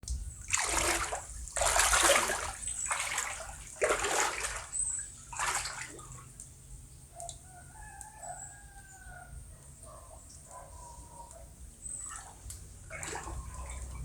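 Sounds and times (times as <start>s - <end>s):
floodwater sloshing and splashing: 0.0s - 6.5s, 11.8s - 14.0s.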